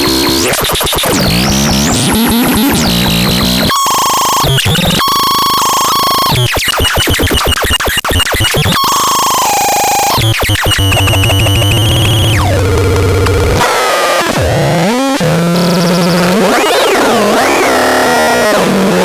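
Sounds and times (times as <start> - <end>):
harsh synthesizer buzzing: 8.3 - 19.0.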